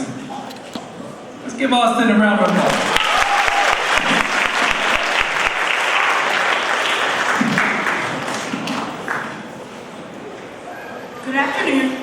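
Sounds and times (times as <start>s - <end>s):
audience applauding: 2.5s - 9.5s.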